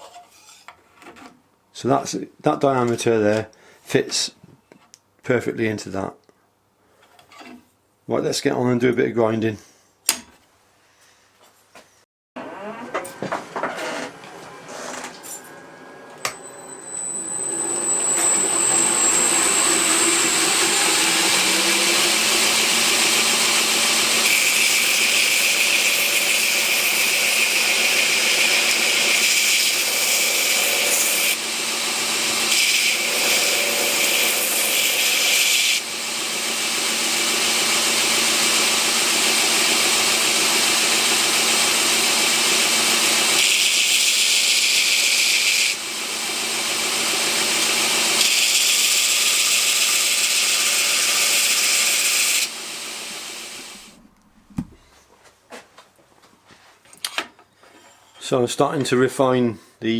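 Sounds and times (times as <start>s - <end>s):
steel blade grinding on belt: 16.3s - 31.4s, 32.5s - 35.8s
belt grinder motor running: 16.3s - 53.9s.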